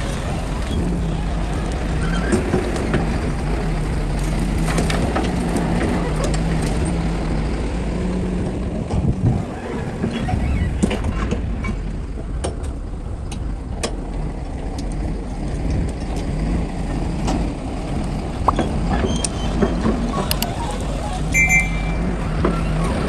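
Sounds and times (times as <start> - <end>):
heavy machinery diesel engine: 0.0 - 23.0
short high beep: 21.2 - 22.3.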